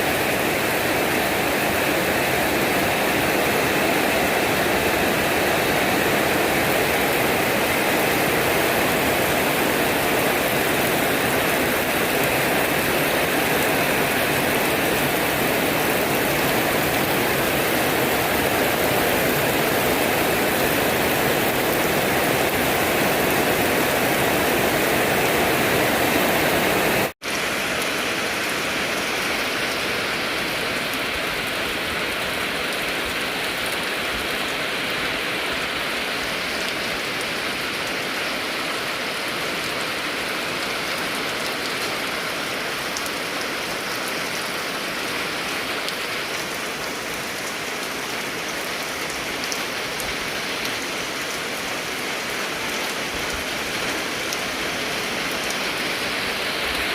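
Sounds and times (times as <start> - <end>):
steady rain falling: 0.0 - 56.9.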